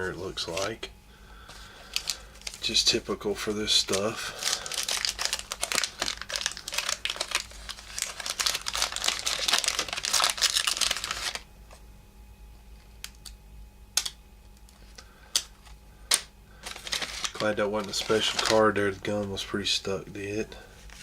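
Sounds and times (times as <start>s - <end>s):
wax paper wrapper crinkling: 0.0s - 0.8s, 1.6s - 11.5s, 14.6s - 19.7s.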